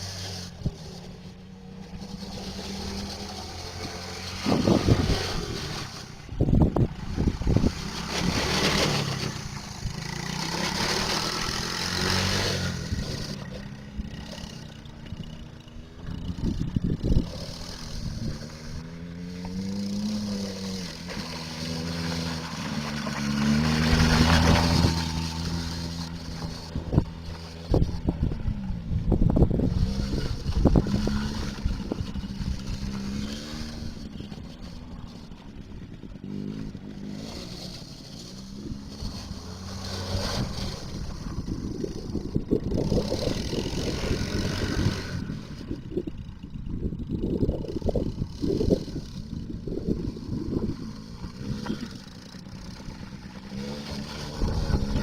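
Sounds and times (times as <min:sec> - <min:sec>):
small atv engine revving: 0:00.0 - 0:55.0.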